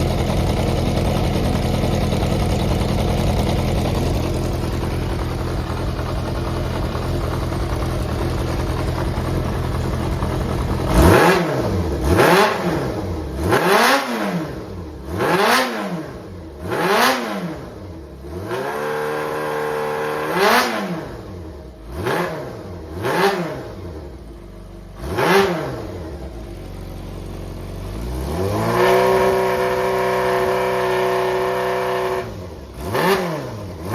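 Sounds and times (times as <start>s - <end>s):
motorcycle engine idling and revving: 0.0s - 33.9s.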